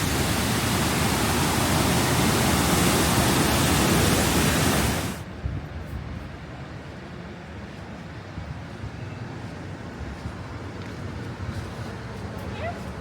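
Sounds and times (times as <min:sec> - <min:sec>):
waterfall roaring: 0:00.0 - 0:05.2.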